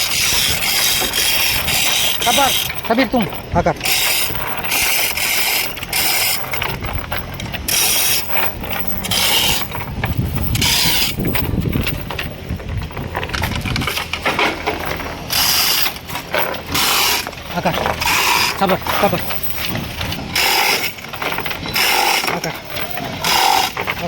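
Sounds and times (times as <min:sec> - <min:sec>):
metal ratchet rasping: 0:00.0 - 0:24.0
steady low rumble: 0:00.0 - 0:24.0.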